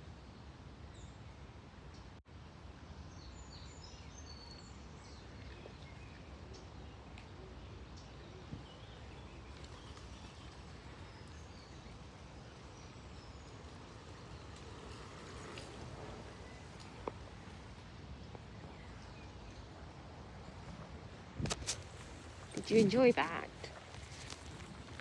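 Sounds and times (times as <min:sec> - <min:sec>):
distant birds chirping: 0:08.6 - 0:25.0
small stream flowing: 0:09.0 - 0:25.0.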